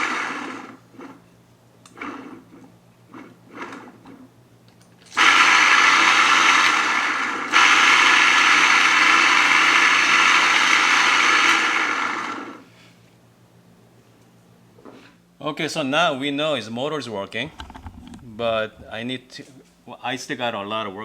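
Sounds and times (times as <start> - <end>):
coffee grinder motor running: 0.0 - 1.2, 1.9 - 4.2, 5.1 - 12.6.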